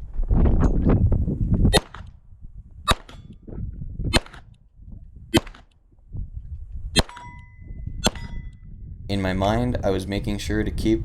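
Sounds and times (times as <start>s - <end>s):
pistol shots: 2.9s - 3.3s, 4.1s - 4.5s, 5.4s - 5.7s.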